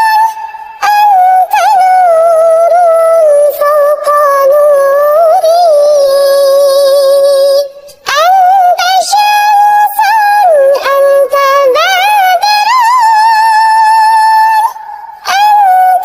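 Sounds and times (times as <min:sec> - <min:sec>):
synthetic voice singing devotional song: 0:00.0 - 0:16.0.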